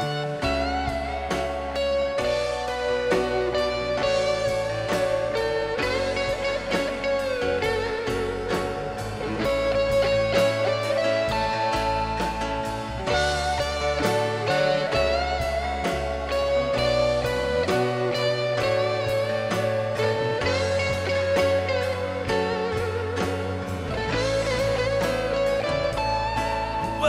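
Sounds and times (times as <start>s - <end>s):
bass guitar: 0.0s - 27.0s
lead guitar with wavering notes: 0.0s - 27.0s
steady drum beat: 0.0s - 27.0s.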